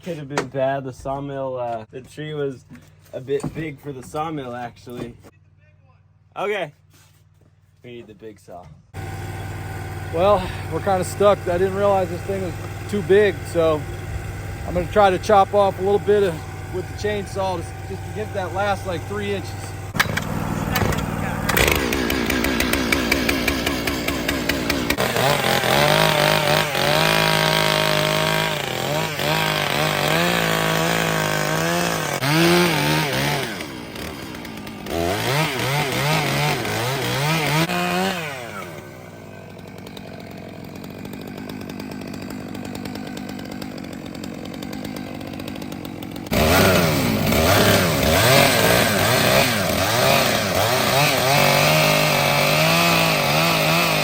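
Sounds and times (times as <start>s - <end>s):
chainsaw cutting log: 9.0s - 54.0s.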